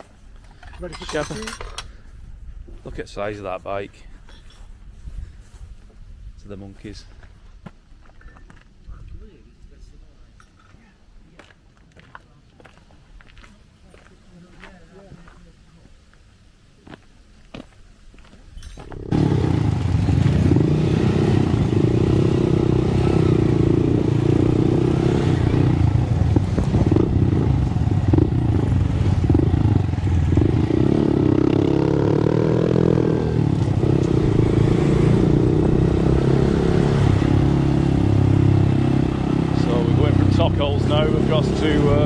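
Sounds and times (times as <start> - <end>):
motorcycle engine running: 18.9 - 42.0.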